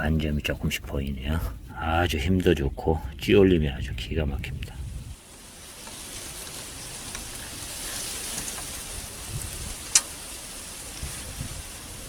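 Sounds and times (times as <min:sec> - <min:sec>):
rain hissing: 0:04.7 - 0:12.0
sharp tick: 0:09.9 - 0:10.2.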